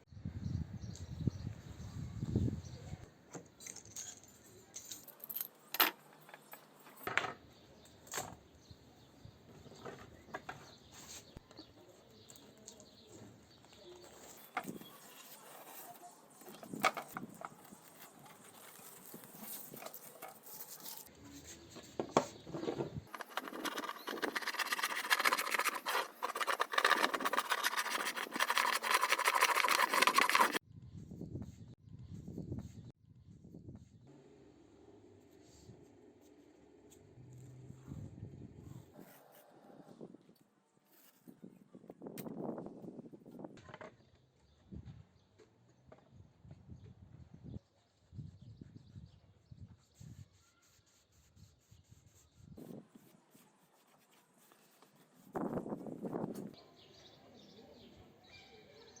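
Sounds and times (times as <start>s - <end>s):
rasping scratching on wood: 23.1s - 30.6s.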